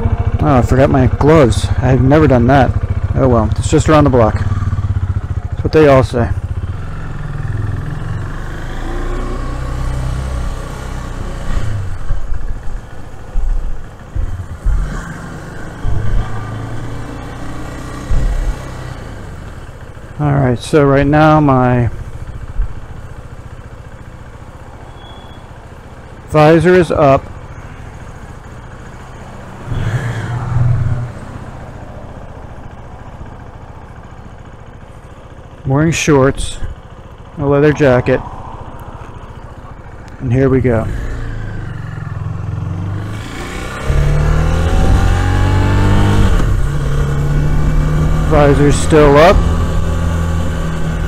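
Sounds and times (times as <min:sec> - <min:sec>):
motorcycle engine running: 0:00.0 - 0:51.0
low thumps and rumbles: 0:11.7 - 0:19.7, 0:22.2 - 0:23.0, 0:43.4 - 0:51.0.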